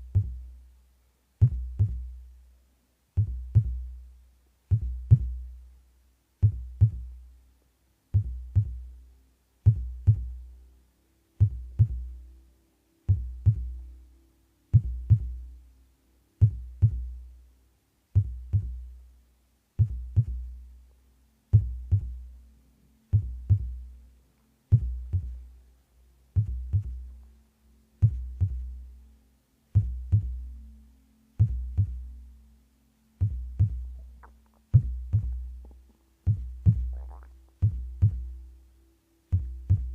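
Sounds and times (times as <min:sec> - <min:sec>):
heartbeat lub-dub: 0:00.0 - 0:00.6, 0:01.4 - 0:02.3, 0:03.2 - 0:04.1, 0:04.7 - 0:05.6, 0:06.4 - 0:07.2, 0:08.2 - 0:09.0, 0:09.7 - 0:10.5, 0:11.4 - 0:12.2, 0:13.0 - 0:13.9, 0:14.7 - 0:15.6, 0:16.4 - 0:17.3, 0:18.2 - 0:19.0, 0:19.8 - 0:20.6, 0:21.5 - 0:22.4, 0:23.1 - 0:24.0, 0:24.7 - 0:25.5, 0:26.4 - 0:27.3, 0:28.0 - 0:28.9, 0:29.7 - 0:30.6, 0:31.3 - 0:32.2, 0:33.2 - 0:38.5, 0:39.2 - 0:39.9.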